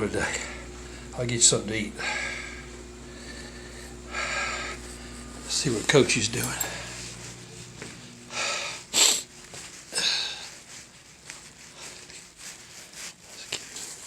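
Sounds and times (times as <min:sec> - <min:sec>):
faint rustling: 0:02.1 - 0:14.0
person sniffing: 0:08.4 - 0:10.7.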